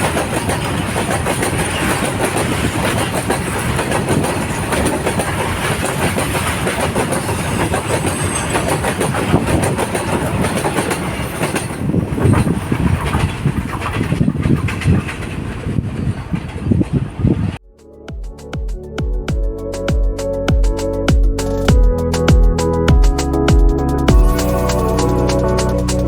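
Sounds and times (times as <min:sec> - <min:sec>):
train wheels clattering on rails: 0:00.0 - 0:17.3.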